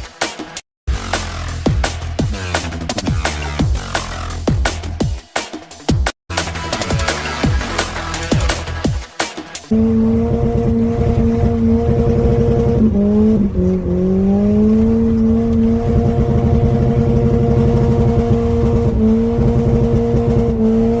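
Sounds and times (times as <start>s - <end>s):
car engine at high revs: 9.7s - 21.0s.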